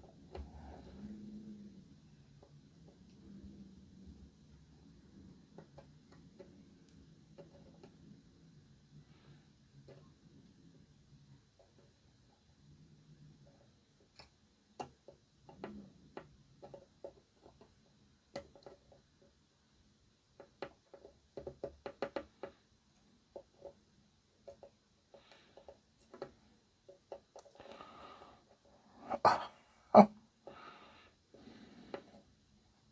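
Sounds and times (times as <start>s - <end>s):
small tools clicking and tapping: 14.0s - 19.4s.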